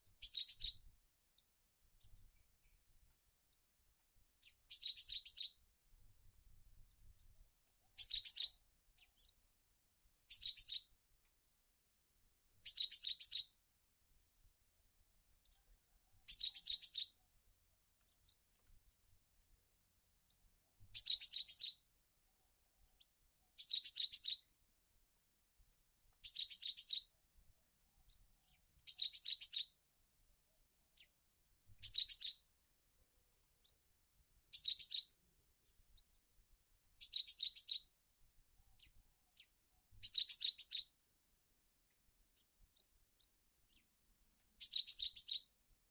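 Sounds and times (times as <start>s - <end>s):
bird song of quick high notes: 0.0s - 2.8s, 3.9s - 5.6s, 7.8s - 9.4s, 10.1s - 10.9s, 12.5s - 13.6s, 15.5s - 17.2s, 20.8s - 21.8s, 23.4s - 24.5s, 26.0s - 27.1s, 28.5s - 29.8s, 31.6s - 32.5s, 34.4s - 35.2s, 36.8s - 37.9s, 38.9s - 41.0s, 44.4s - 45.6s.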